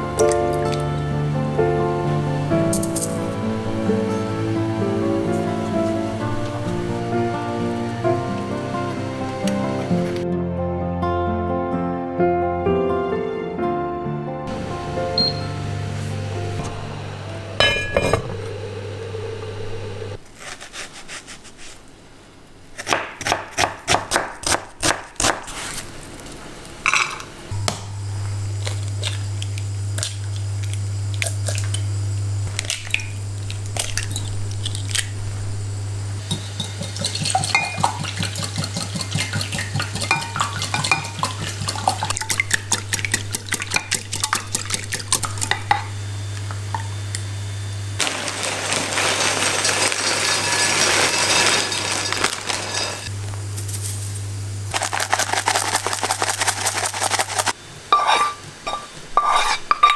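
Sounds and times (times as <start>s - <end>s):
utensils clinking against pots: 0.0s - 0.9s, 2.7s - 3.4s, 17.6s - 18.5s, 26.8s - 27.8s, 36.3s - 45.9s, 48.0s - 53.1s, 54.8s - 59.9s
steady low hum: 14.5s - 20.4s, 25.8s - 48.0s.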